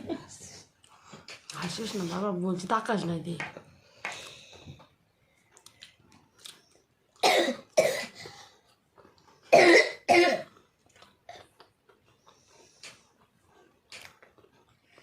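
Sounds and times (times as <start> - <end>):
person coughing hard: 7.2 - 8.2, 9.5 - 10.5.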